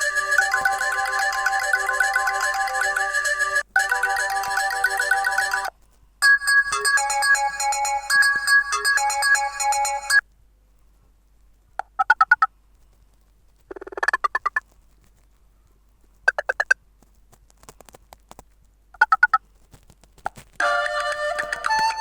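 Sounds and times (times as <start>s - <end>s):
rapid chirping pulses: 0.0s - 10.2s
ringtone melody: 0.0s - 10.2s, 20.6s - 22.0s.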